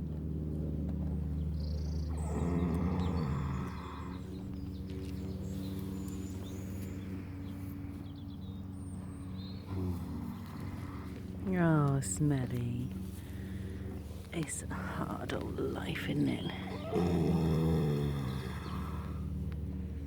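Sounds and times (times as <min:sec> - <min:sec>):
horse snoring: 0:02.0 - 0:04.6, 0:09.4 - 0:11.5, 0:16.6 - 0:19.4.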